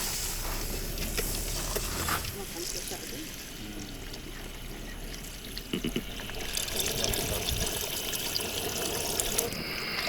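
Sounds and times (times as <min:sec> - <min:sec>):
liquid pouring: 0:05.2 - 0:10.0.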